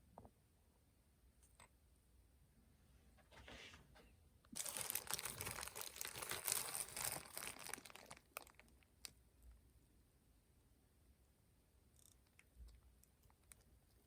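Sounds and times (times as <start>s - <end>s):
thin metal sheet crinkling: 4.6s - 8.3s.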